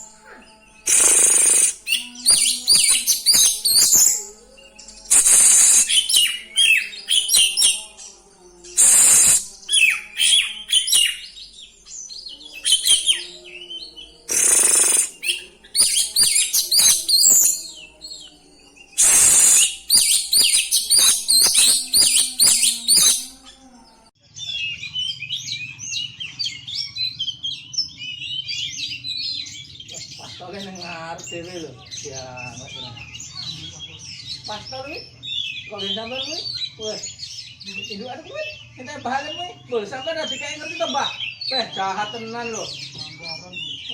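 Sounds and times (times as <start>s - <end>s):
songbird singing whistles and chirps: 0.0s - 43.9s
loud harsh bursts: 0.9s - 1.9s, 5.1s - 6.0s, 8.8s - 9.5s, 19.0s - 23.3s.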